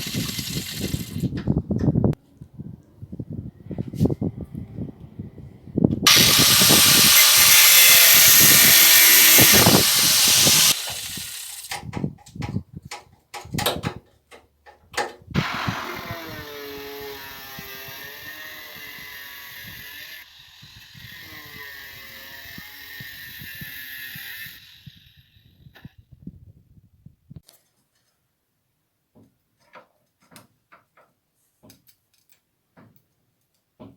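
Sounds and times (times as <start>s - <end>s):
angle grinder with wire wheel: 0.0s - 1.4s, 6.1s - 11.8s, 15.4s - 25.9s.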